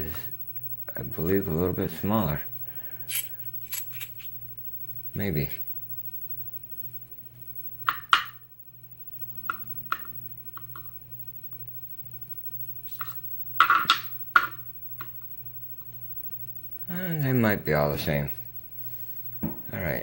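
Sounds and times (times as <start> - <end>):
small metal lock parts clicking: 3.1 - 4.3.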